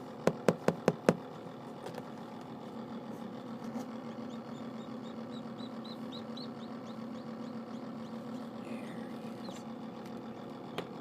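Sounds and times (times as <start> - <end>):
steady low hum: 0.0 - 11.0
chick peeping: 4.1 - 9.7.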